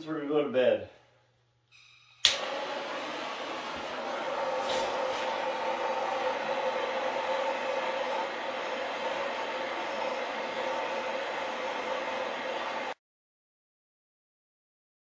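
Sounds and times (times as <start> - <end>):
gas torch flame hissing roar: 2.2 - 13.0.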